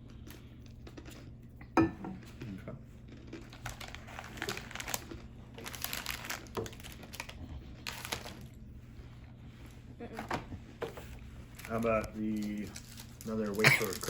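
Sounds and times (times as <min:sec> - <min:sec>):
plastic packaging crinkling: 0:03.3 - 0:08.6, 0:11.5 - 0:14.0.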